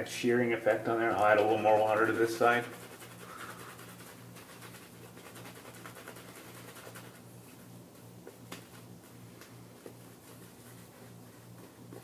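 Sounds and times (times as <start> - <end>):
shaving brush swishing lather: 0.7 - 7.7, 9.7 - 12.0.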